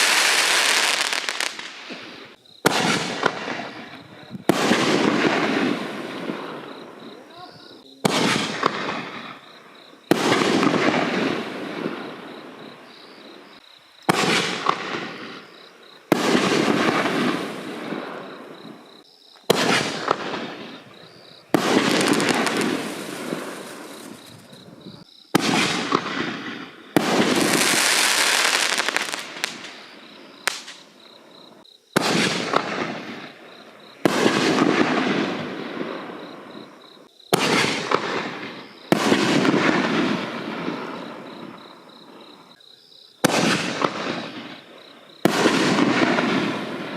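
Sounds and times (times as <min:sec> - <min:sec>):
firework hissing tail: 0:00.0 - 0:06.8, 0:10.0 - 0:18.7, 0:19.5 - 0:31.0
firework shells bursting: 0:00.0 - 0:06.8, 0:21.5 - 0:24.6, 0:25.3 - 0:31.0.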